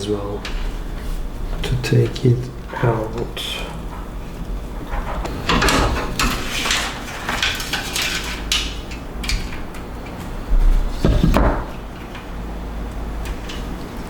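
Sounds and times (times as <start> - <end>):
clicks and clatter inside computer case: 3.1 - 12.3.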